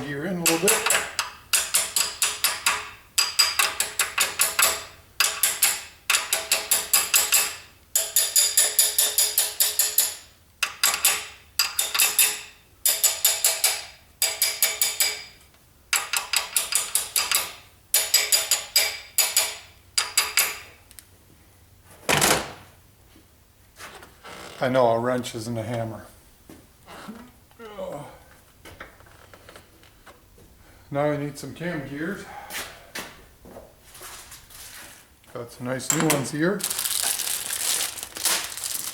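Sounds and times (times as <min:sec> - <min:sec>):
wrench hammering metal gear: 0:00.4 - 0:15.3, 0:16.0 - 0:20.7.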